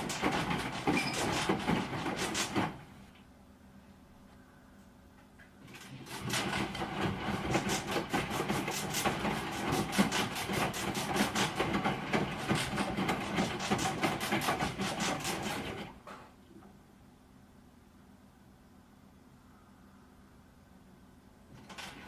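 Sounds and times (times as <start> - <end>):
washing machine rattling knock: 0.0 - 3.0, 5.8 - 16.2.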